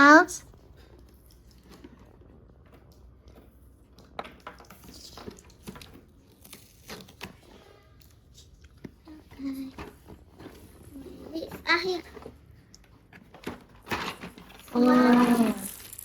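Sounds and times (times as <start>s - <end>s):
plastic toy pieces clicking: 13.9s - 16.0s.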